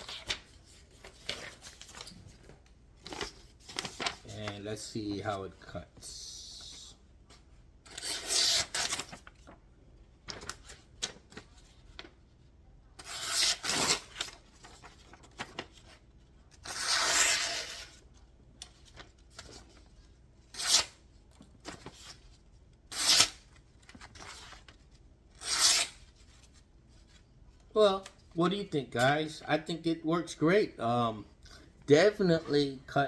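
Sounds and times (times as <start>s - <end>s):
paper rustling: 0.0s - 5.3s, 7.3s - 9.6s, 10.2s - 12.2s, 13.5s - 20.1s, 21.3s - 22.6s
knife slicing paper: 16.6s - 17.9s, 25.4s - 26.0s.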